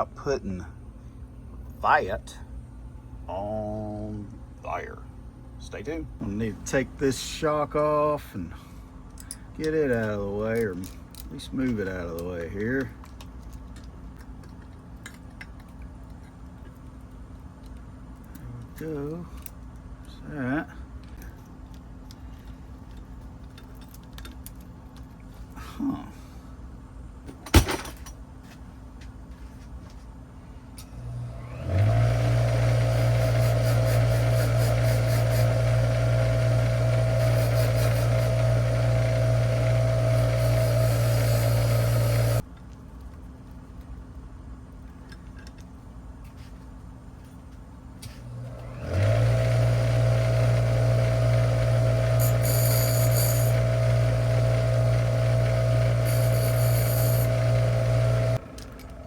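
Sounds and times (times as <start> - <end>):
rotary tool grinding: 31.6 - 42.4, 48.6 - 58.9.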